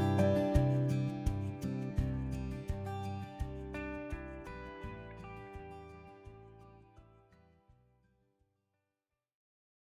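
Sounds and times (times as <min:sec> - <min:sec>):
faint background music: 0:00.0 - 0:07.9.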